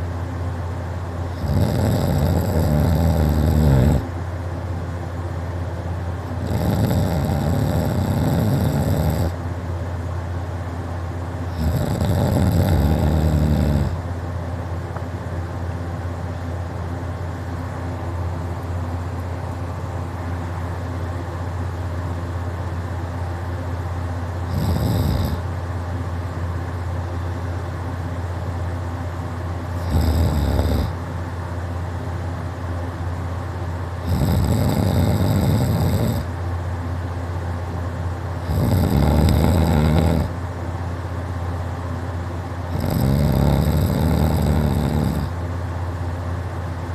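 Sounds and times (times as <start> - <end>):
steady low hum: 0.0 - 46.9
man snoring loudly: 1.3 - 4.1, 6.4 - 9.4, 11.5 - 14.0, 24.5 - 25.5, 29.8 - 31.0, 34.0 - 36.3, 38.4 - 40.4, 42.7 - 45.4.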